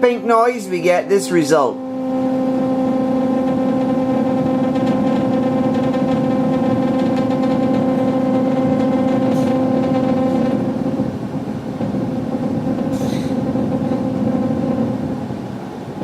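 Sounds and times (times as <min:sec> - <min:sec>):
synthesizer note with grainy flutter: 0:00.0 - 0:11.2.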